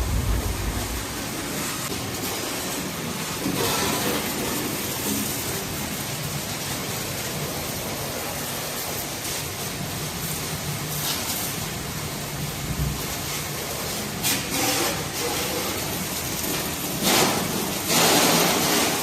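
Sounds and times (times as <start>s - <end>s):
water spraying: 0.0s - 19.0s.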